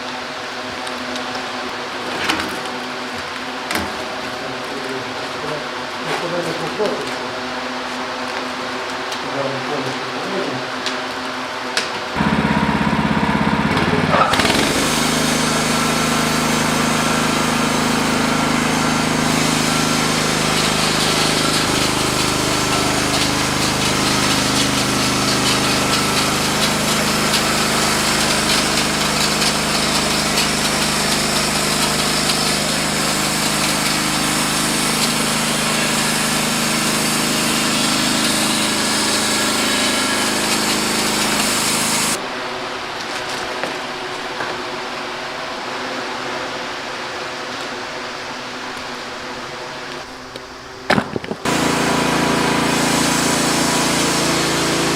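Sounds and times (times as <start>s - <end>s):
sawmill engine droning: 12.2s - 42.2s, 51.4s - 54.9s
band blade sawing log: 14.1s - 42.2s, 51.4s - 54.9s.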